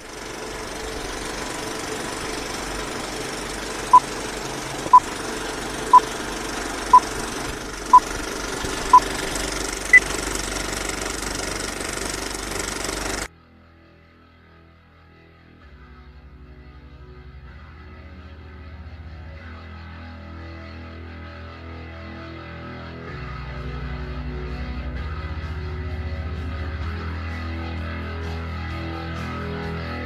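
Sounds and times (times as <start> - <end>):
mechanical running noise: 0.0 - 13.3.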